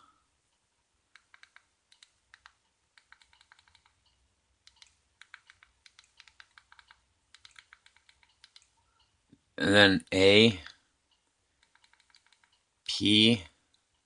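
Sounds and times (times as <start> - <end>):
keyboard keys clicking: 1.1 - 4.1, 4.7 - 8.7, 11.6 - 12.6.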